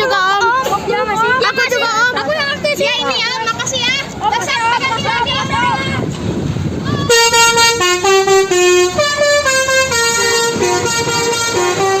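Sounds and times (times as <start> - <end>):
bus musical horn playing a tune: 7.1 - 12.0.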